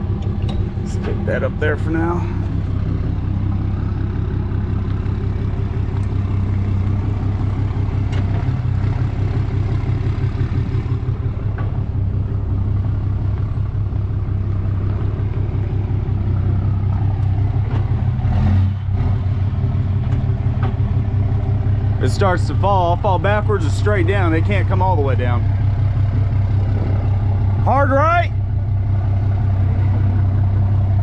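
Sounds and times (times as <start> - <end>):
truck engine idling: 0.0 - 31.0
light clicks and clanks: 0.2 - 1.2.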